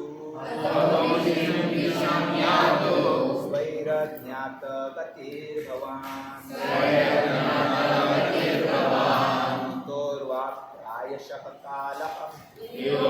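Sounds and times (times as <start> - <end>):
group of voices chanting: 0.3 - 4.0, 6.0 - 9.9, 12.6 - 13.0.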